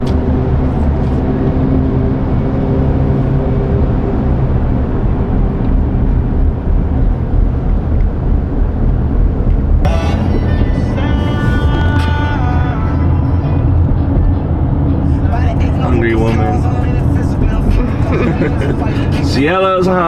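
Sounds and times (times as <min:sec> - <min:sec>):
vehicle rumble: 0:00.0 - 0:20.0
music: 0:09.8 - 0:20.0.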